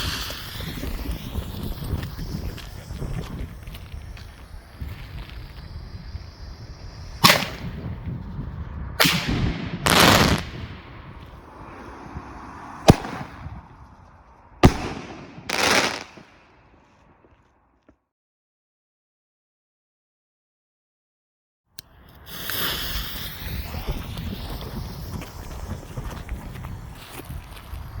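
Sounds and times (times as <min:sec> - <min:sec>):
firework bangs: 0:06.4 - 0:08.2, 0:09.0 - 0:13.9, 0:14.6 - 0:16.5
rushing burst: 0:09.0 - 0:13.6, 0:14.6 - 0:16.3.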